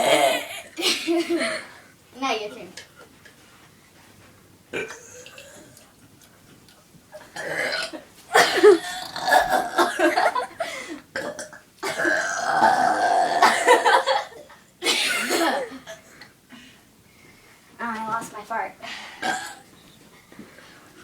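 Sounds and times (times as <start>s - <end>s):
girl burping: 0.0s - 0.7s, 4.8s - 5.8s, 7.3s - 10.4s, 11.2s - 15.8s, 19.2s - 19.6s.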